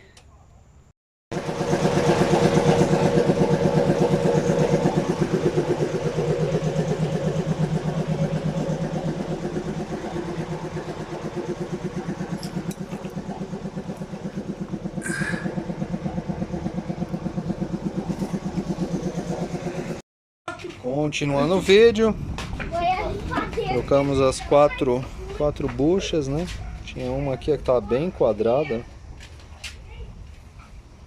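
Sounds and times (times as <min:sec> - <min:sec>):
engine running with pulsing beat: 0:01.3 - 0:20.0.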